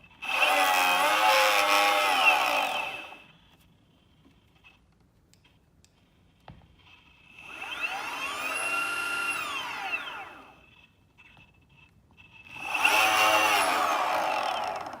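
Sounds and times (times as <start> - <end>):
electric motor whine: 0.2 - 3.3, 7.4 - 10.8, 12.5 - 15.0.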